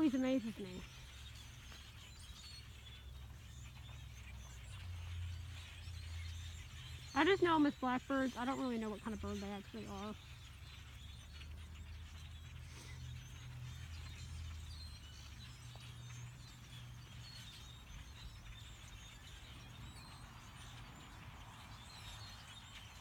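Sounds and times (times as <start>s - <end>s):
distant flock of birds chattering: 0.0s - 23.0s.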